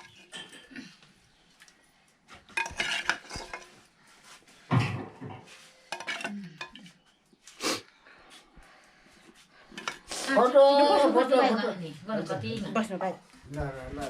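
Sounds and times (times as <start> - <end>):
pots and dishes clattering: 0.0 - 1.0, 2.4 - 3.8, 4.7 - 6.9, 9.7 - 10.1.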